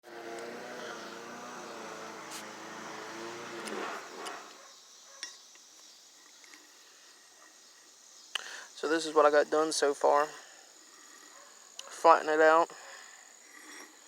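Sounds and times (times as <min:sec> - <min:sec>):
motor humming: 0:00.0 - 0:04.6.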